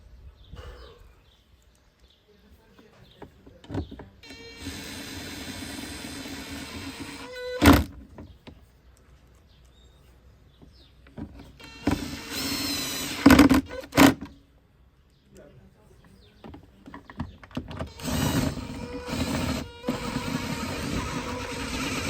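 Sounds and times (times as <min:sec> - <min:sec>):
electric window motor whining: 0:04.2 - 0:08.0, 0:11.4 - 0:14.3, 0:17.6 - 0:22.0.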